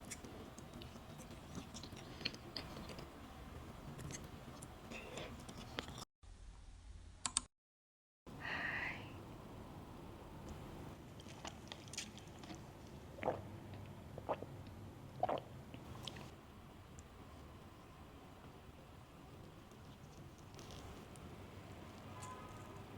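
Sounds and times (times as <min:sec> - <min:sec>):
wet mouth clicks chewing: 0:00.0 - 0:03.1.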